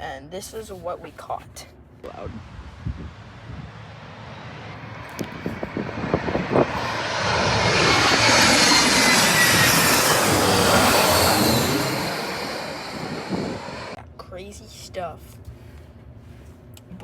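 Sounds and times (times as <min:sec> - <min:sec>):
wind buffeting microphone: 0:02.1 - 0:14.0
jet airliner passing overhead: 0:02.3 - 0:14.0.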